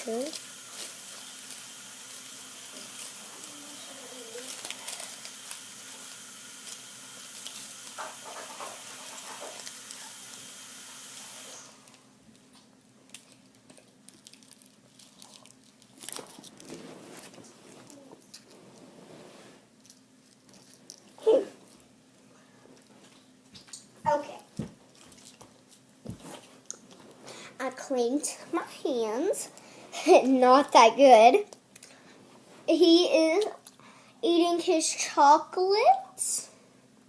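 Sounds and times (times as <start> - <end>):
water tap running: 0.0 - 4.4, 5.2 - 11.7
faint clicks and rustles: 22.6 - 27.3.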